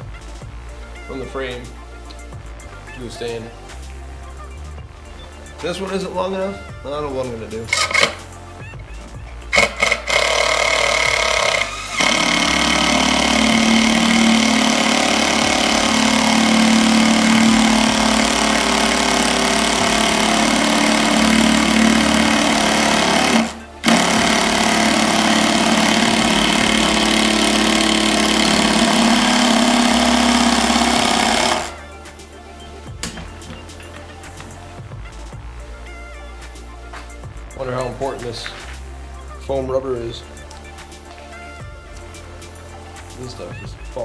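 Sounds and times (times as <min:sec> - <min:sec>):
power tool motor running: 0:05.7 - 0:08.4, 0:09.5 - 0:34.9.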